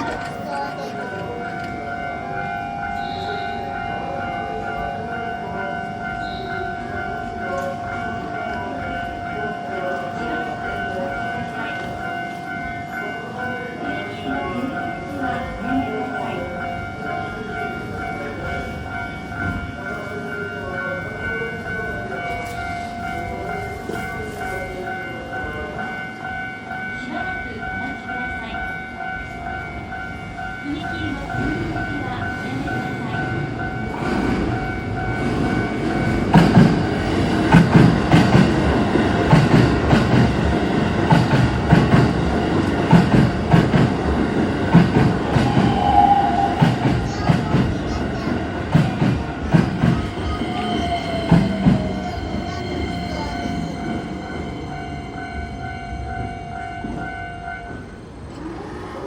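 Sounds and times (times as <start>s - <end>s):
train wheels clunking over rail joints: 0.0s - 1.8s, 33.0s - 45.8s
level crossing bells clanging: 0.0s - 59.0s
train rumbling past: 0.0s - 59.0s.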